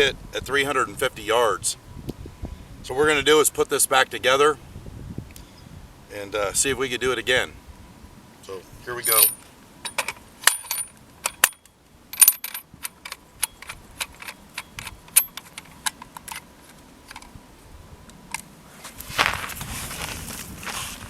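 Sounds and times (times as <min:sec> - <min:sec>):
metallic clicks and clinks: 0:09.0 - 0:17.3
loud rustling rush: 0:18.6 - 0:21.0.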